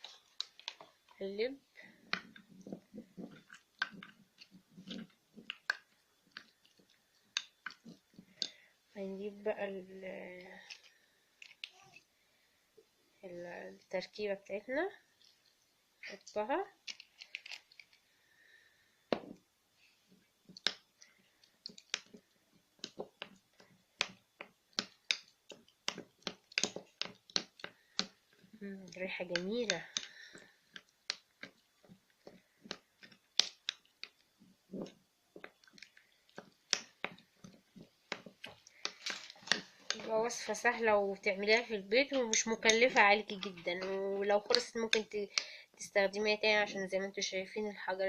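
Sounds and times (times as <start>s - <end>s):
soft wet squelching: 19.8s - 45.8s.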